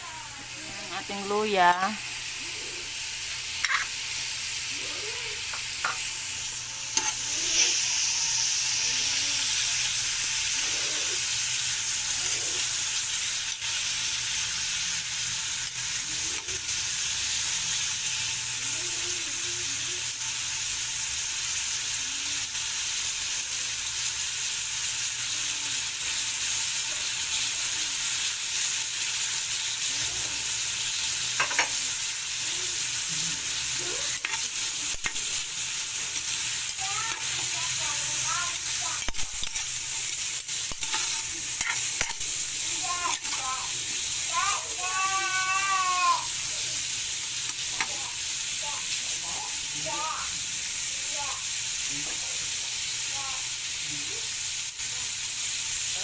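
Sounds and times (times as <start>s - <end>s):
food sizzling in hot oil: 0.0s - 56.0s
utensil clicking against pan: 34.1s - 35.4s, 39.0s - 42.3s.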